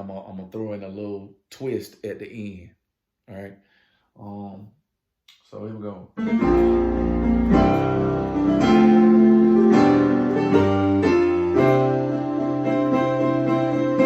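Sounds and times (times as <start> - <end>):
keyboard chord progression: 6.2 - 14.0.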